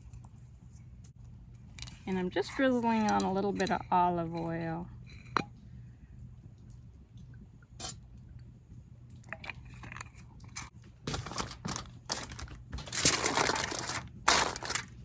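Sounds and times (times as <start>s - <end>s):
aluminum foil crinkling: 10.7s - 15.0s.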